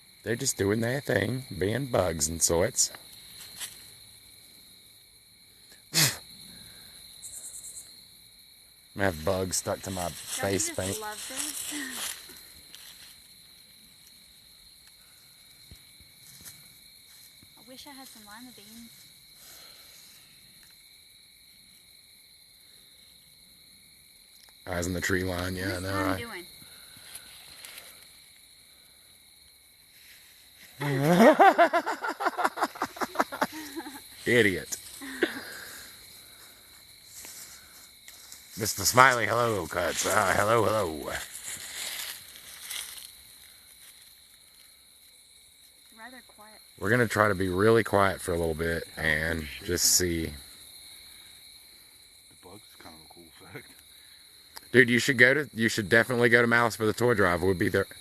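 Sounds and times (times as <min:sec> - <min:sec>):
night insects trilling: 0:00.0 - 0:58.0
person sneezing: 0:06.0 - 0:06.2.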